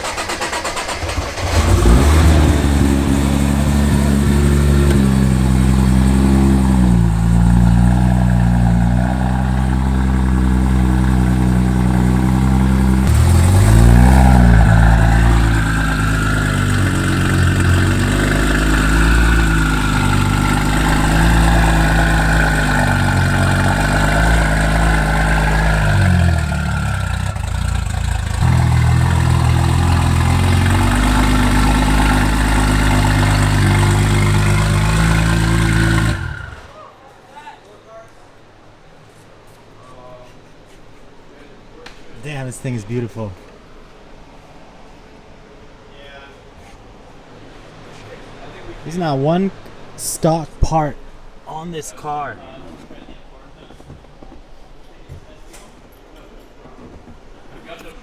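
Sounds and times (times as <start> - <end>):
car engine idling: 0.0 - 36.7.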